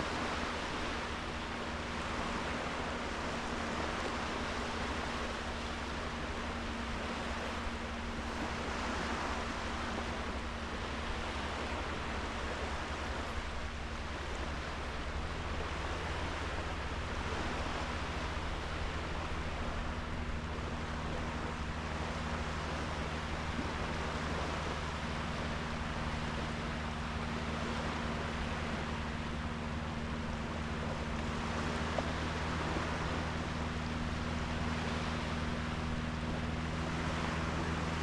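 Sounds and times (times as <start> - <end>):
low hum: 0.0 - 38.0
sea waves on sandy beach: 0.0 - 38.0.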